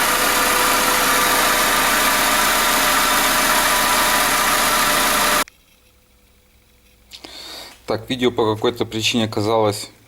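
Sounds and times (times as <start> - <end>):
car engine idling: 0.0 - 5.4.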